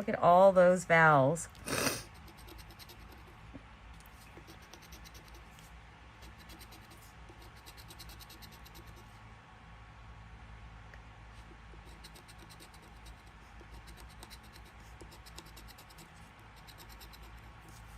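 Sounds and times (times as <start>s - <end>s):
scratching scratch-off ticket: 1.7s - 3.4s, 4.0s - 9.1s, 11.7s - 17.9s.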